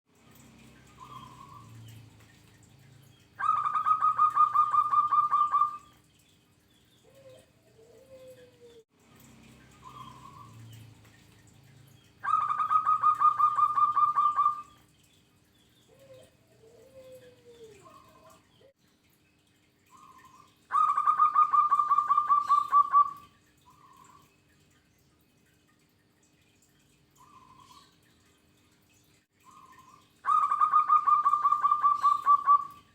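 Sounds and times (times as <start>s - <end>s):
dove song of falling notes: 3.0s - 8.8s, 9.4s - 11.3s, 12.1s - 14.9s, 19.8s - 24.3s, 29.4s - 32.9s.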